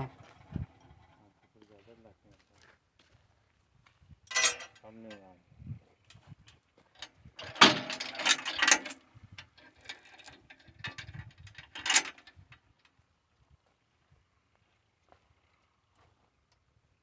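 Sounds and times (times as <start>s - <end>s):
metal mechanism clattering: 4.3s - 4.8s, 7.4s - 9.0s.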